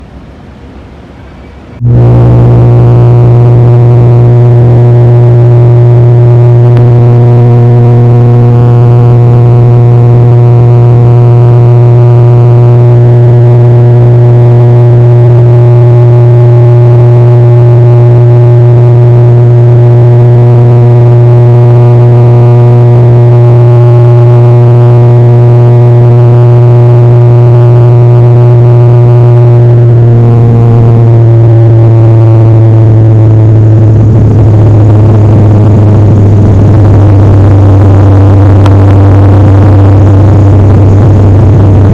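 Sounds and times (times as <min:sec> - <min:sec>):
airliner engines droning: 0:28.3 - 0:41.9.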